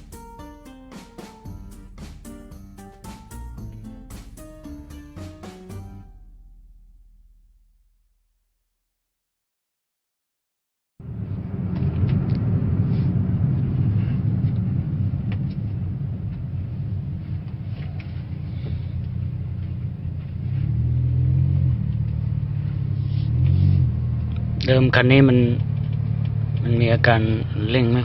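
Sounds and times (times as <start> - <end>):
car engine and road rumble: 11.0 - 28.0.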